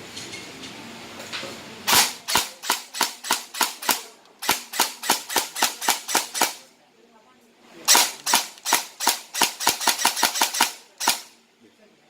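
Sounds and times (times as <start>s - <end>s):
airsoft gun single shots: 1.9s - 6.6s, 7.9s - 11.4s.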